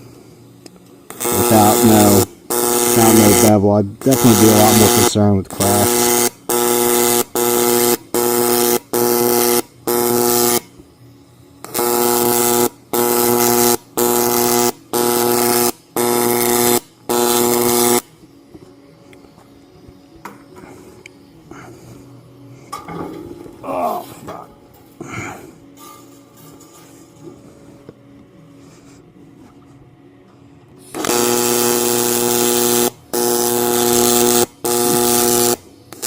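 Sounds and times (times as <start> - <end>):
welding arc buzzing: 0.0 - 27.6, 30.8 - 36.0.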